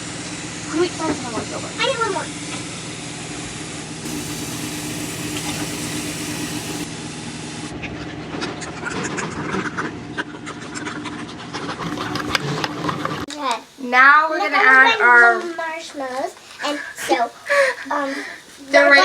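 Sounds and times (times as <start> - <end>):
low mechanical hum: 3.4 - 7.8.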